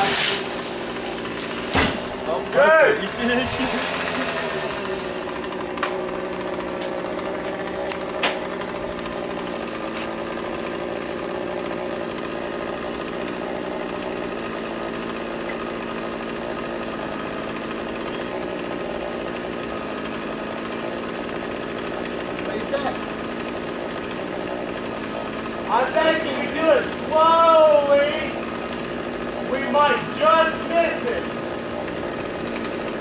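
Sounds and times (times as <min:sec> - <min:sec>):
chainsaw engine running: 0:00.0 - 0:33.0
sharp knocks: 0:01.6 - 0:02.1.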